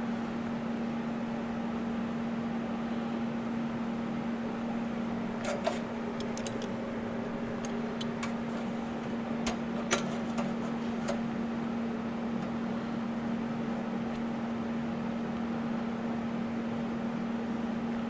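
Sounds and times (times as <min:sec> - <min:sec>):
steady low hum: 0:00.0 - 0:16.3
metal parts clinking: 0:05.5 - 0:06.8.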